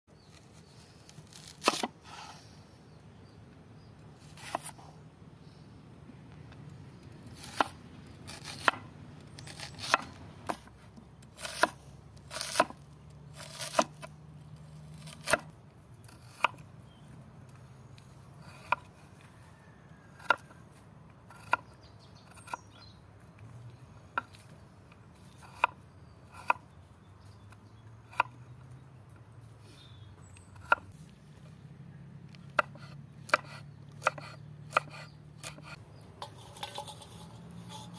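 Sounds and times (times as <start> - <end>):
knife chopping on cutting board: 32.6 - 35.8.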